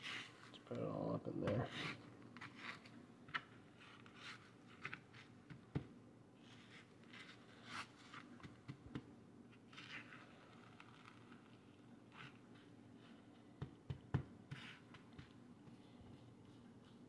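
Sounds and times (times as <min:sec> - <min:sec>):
hands rubbing spice into meat: 0:14.5 - 0:17.0.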